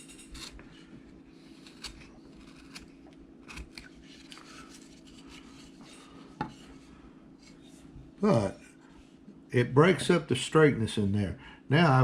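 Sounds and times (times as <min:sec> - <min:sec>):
gouge cutting wood: 0:01.6 - 0:02.9.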